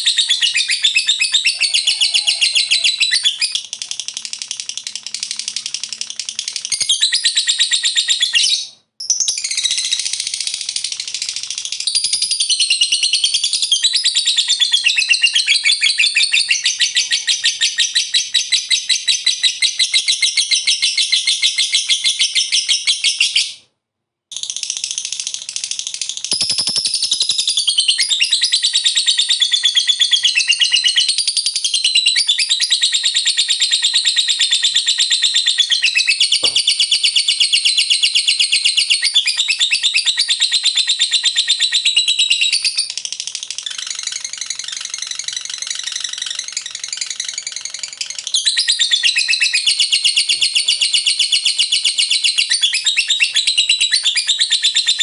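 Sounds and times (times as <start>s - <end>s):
lovebird chattering chirps: 0.0s - 7.4s, 26.0s - 31.1s.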